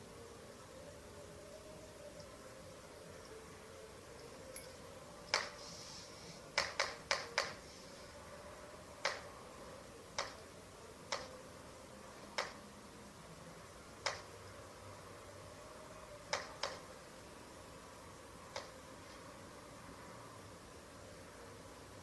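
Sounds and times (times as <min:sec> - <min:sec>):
owl beak snapping: 0:06.6 - 0:07.6, 0:09.0 - 0:09.3, 0:10.2 - 0:10.4, 0:11.1 - 0:11.3, 0:12.4 - 0:12.6, 0:14.0 - 0:14.3, 0:16.3 - 0:16.8, 0:18.5 - 0:18.8.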